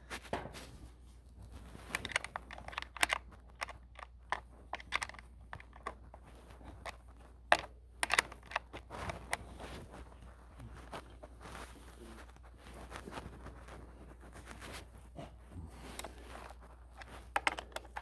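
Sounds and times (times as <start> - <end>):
light clicks and taps of tool: 1.9 - 9.4.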